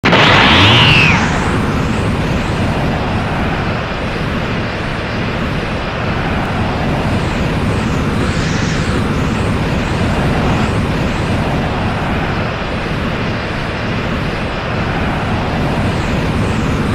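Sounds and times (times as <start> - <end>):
power-up rushing noise: 0.0 - 2.7, 7.8 - 10.8
deep rumble: 0.0 - 4.8, 5.8 - 16.9.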